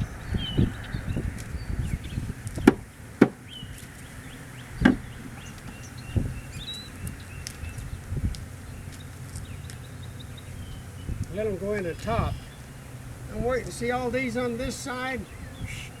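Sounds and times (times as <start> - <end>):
wooden beehive parts knocking: 2.4 - 4.0, 4.8 - 6.3.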